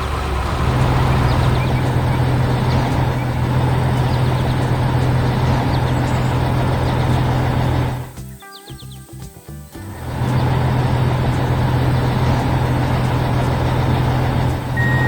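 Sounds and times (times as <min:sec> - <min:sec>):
heavy vehicle engine running: 0:00.0 - 0:08.2, 0:09.8 - 0:15.0.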